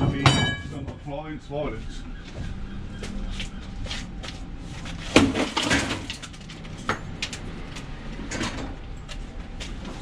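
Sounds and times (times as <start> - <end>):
appliance crashing: 5.1 - 6.5.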